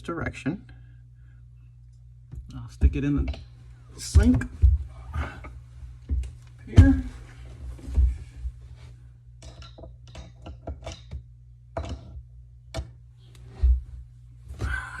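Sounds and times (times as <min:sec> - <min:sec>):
drain parts clicking and knocking: 0:09.4 - 0:11.2.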